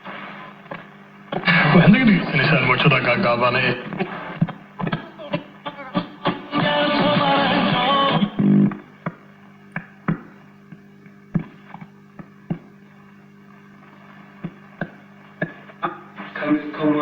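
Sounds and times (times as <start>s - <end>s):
radio music: 0.0s - 9.2s, 13.5s - 17.0s
static clicks: 0.0s - 16.7s
radio low hum: 0.0s - 17.0s.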